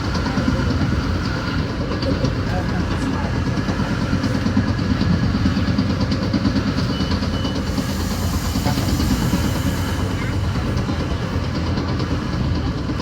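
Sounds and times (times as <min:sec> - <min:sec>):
train rumble and clatter: 0:00.0 - 0:13.0.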